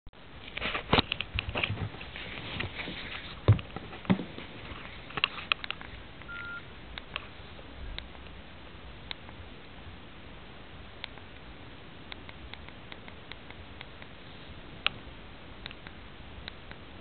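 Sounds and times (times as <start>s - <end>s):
short phone beep: 6.3s - 6.6s.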